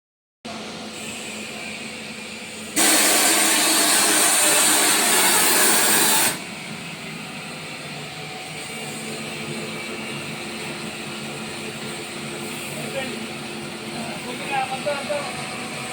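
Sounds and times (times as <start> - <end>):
air compressor humming: 0.7 - 15.9
compressed air hissing: 0.9 - 1.6, 2.5 - 6.6, 12.3 - 13.0.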